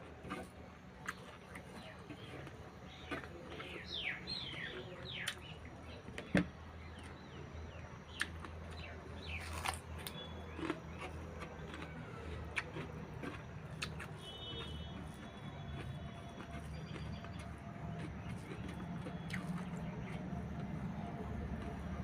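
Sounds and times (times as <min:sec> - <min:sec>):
small birds chirping: 0:00.3 - 0:22.0.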